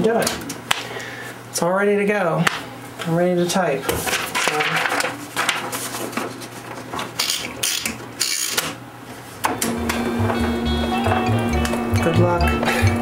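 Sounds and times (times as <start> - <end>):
music: 9.6 - 13.0.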